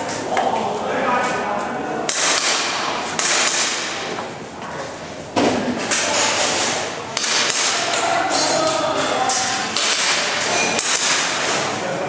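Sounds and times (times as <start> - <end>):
airsoft pistol shots: 2.1 - 4.0
pellets hitting targets: 2.1 - 4.1, 5.4 - 11.8.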